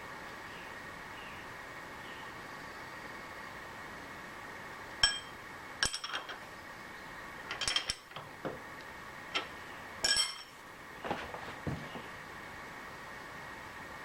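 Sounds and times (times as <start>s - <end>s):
faint hum: 0.0s - 14.0s
metal tools clinking: 5.0s - 6.4s, 7.5s - 8.3s, 9.4s - 10.6s.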